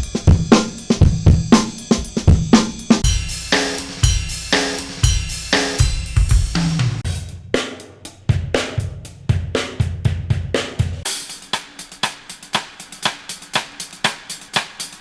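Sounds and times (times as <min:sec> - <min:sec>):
drum kit playing a beat: 0:00.0 - 0:15.0
cymbals ringing: 0:03.0 - 0:07.0.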